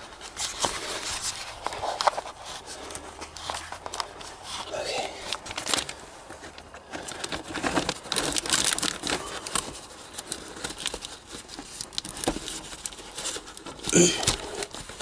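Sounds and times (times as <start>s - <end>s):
rustling and crinkling: 0.0s - 15.0s.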